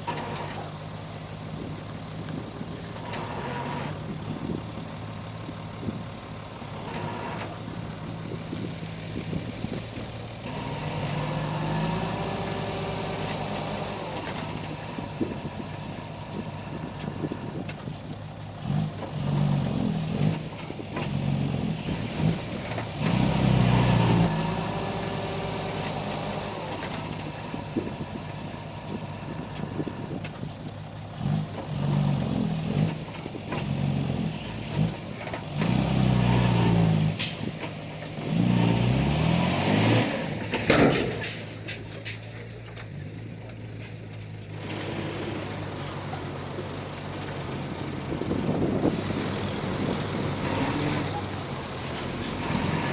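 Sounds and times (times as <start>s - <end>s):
bulldozer diesel engine revving: 0.0s - 52.9s.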